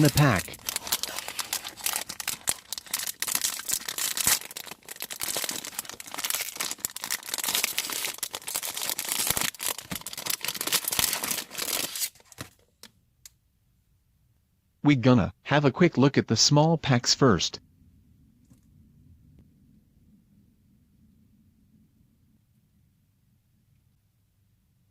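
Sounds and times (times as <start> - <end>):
wrapper crinkling and tearing: 0.0 - 12.6.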